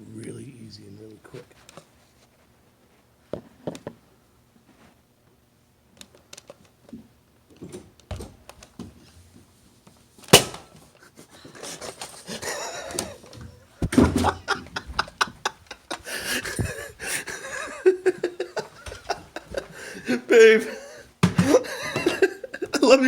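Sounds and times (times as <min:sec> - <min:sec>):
sharp snap: 0:10.4 - 0:10.7
startled cries and laughter: 0:12.2 - 0:23.0
soft footsteps: 0:13.1 - 0:20.0
knocks: 0:21.2 - 0:22.2.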